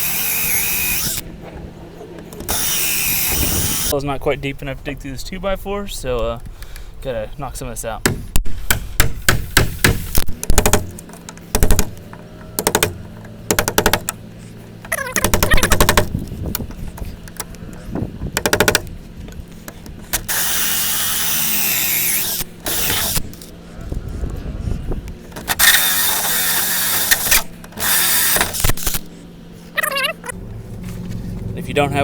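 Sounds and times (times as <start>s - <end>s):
power drill boring through wood: 0.0s - 1.2s, 2.5s - 3.9s, 20.3s - 23.3s, 25.5s - 29.0s.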